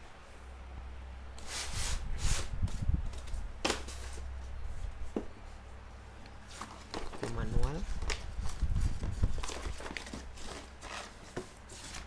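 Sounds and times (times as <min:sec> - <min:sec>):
cardboard and plastic rustling: 0:06.4 - 0:12.0.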